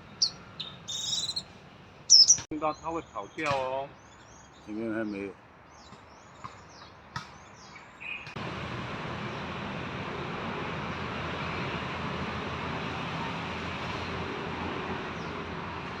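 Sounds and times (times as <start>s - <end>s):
small birds chirping: 0.0s - 8.4s.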